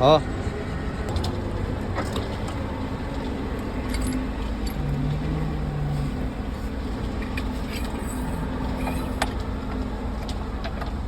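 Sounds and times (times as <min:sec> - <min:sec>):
low engine hum: 0:00.0 - 0:11.0
metallic clicks and clinks: 0:03.6 - 0:05.0.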